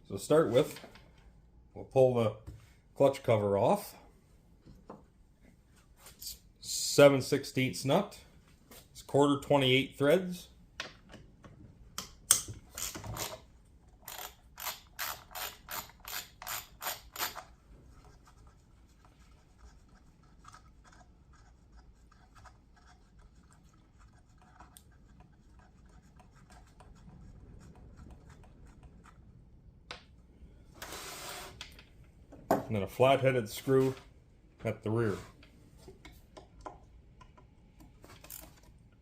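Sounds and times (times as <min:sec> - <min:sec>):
ratchet wrench clicking: 0:12.3 - 0:13.4, 0:14.0 - 0:17.4.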